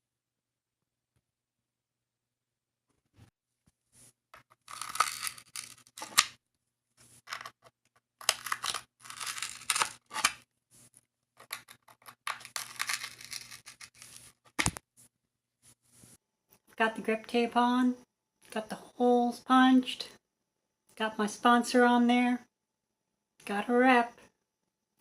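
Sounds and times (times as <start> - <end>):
hand tool scraping grip tape: 8.2 - 10.4.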